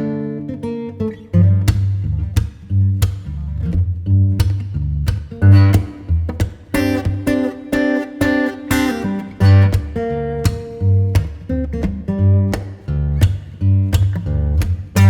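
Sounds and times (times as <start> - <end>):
strummed acoustic guitar: 0.0 - 3.8, 4.4 - 15.0
deep bass line: 1.3 - 7.2, 9.4 - 15.0.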